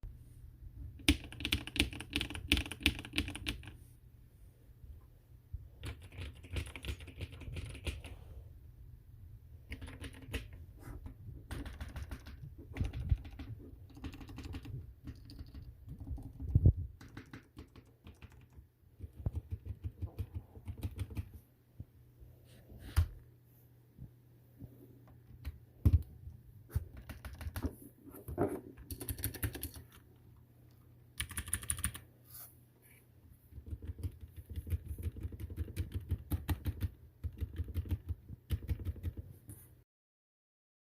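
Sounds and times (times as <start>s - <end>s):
mechanical keyboard typing: 1.0s - 3.8s, 5.8s - 8.1s, 9.7s - 10.6s, 11.5s - 21.4s, 26.7s - 27.8s, 28.8s - 30.0s, 31.2s - 32.1s, 33.5s - 39.2s.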